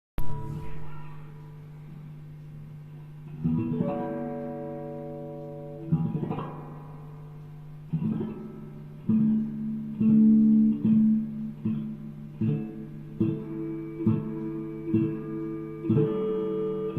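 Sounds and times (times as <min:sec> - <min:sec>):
steady low tone: 0:00.2 - 0:16.9
acoustic guitar strumming: 0:03.4 - 0:16.9.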